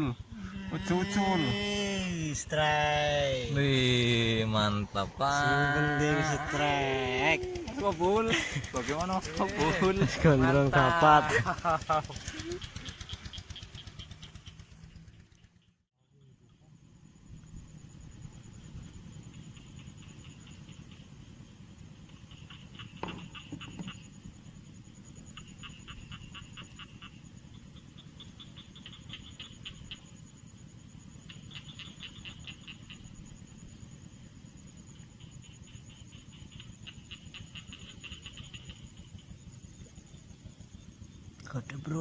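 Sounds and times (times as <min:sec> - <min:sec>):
high-pitched insect whine: 0:00.0 - 0:14.3, 0:16.1 - 0:42.0
rapid pulsed animal trills: 0:00.0 - 0:42.0
low rumble: 0:00.2 - 0:12.7
knock: 0:23.0 - 0:23.9.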